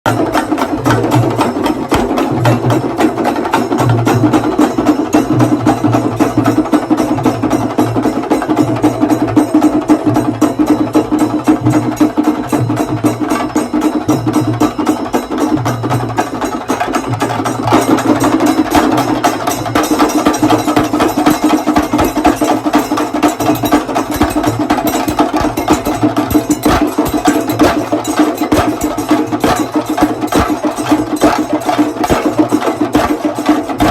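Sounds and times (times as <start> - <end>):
fast drum strokes with sticks: 0.1 - 33.9
deep pulsing drum beat: 17.1 - 33.9.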